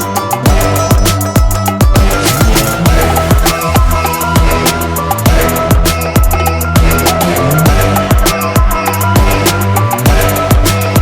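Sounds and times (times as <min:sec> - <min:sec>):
bass line: 0:00.0 - 0:11.0
kick drum: 0:00.5 - 0:04.7, 0:05.3 - 0:07.0
rapid hi-hats: 0:00.5 - 0:11.0.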